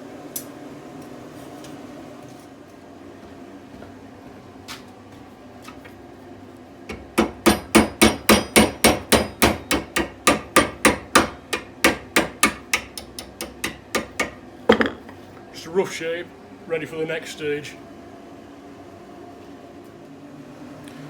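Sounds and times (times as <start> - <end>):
hammer striking hot steel: 6.9 - 15.2.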